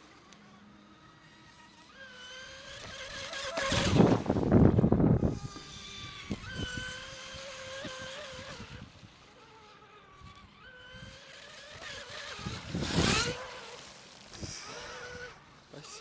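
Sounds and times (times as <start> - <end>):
electric motor high whine: 0.0 - 16.0
race boat rushing past: 0.4 - 16.0.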